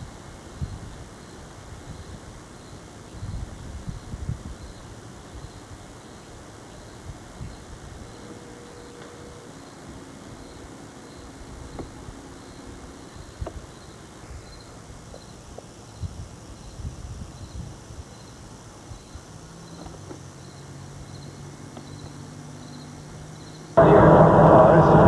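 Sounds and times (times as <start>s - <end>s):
outdoor background noise: 0.0s - 25.0s
insect chirping: 0.5s - 2.9s, 4.0s - 23.7s
low hum: 23.8s - 25.0s.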